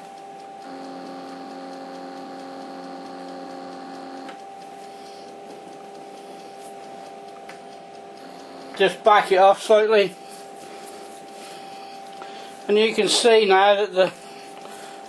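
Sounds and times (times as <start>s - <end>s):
stepper motor whine: 0.0s - 5.5s, 8.1s - 9.2s
lathe whining: 0.6s - 4.4s, 8.2s - 15.0s.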